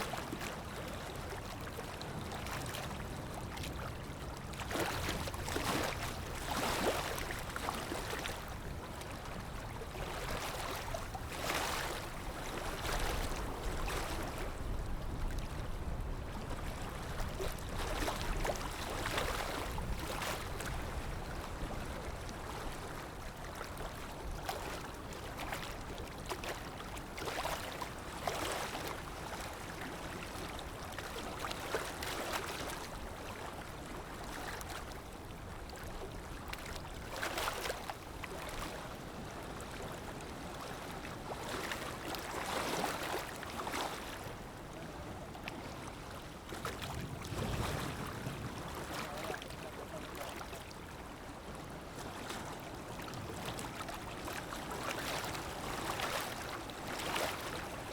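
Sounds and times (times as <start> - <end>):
sea waves washing in: 46.6 - 49.5.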